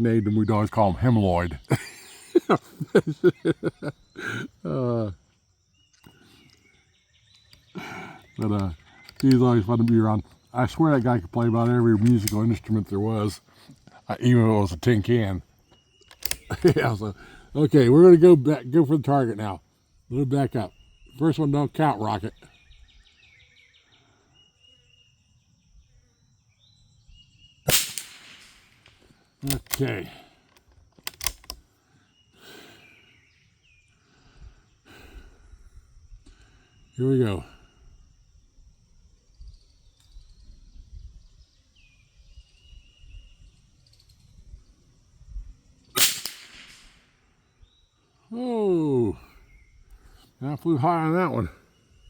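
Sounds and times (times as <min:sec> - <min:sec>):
faint bird chirps: 0:00.0 - 0:27.7, 0:31.8 - 0:46.0, 0:47.0 - 0:52.0
insects: 0:00.0 - 0:52.0
rifle shot crack: 0:27.7 - 0:29.9, 0:46.0 - 0:47.1.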